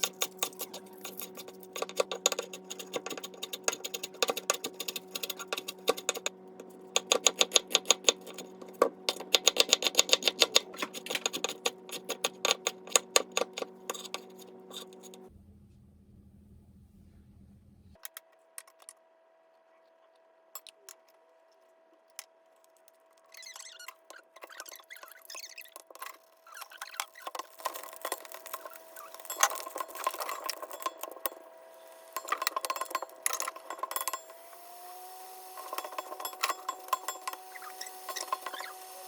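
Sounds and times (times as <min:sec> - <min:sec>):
glass and dishes clinking: 0:35.6 - 0:37.4.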